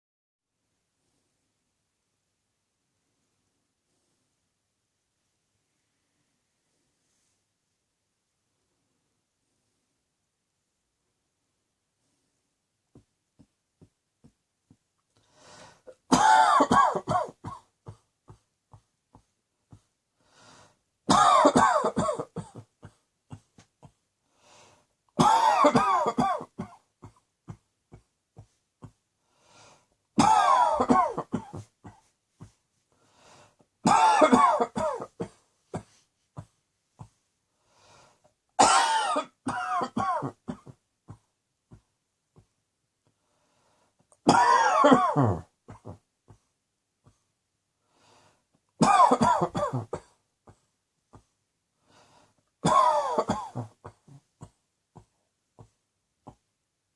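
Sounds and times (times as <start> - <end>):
person coughing: 15.9 - 18.8, 21.1 - 24.0, 25.2 - 28.1, 30.2 - 32.6, 33.8 - 37.2, 38.6 - 41.3, 44.2 - 46.4, 48.8 - 50.6, 52.6 - 55.7.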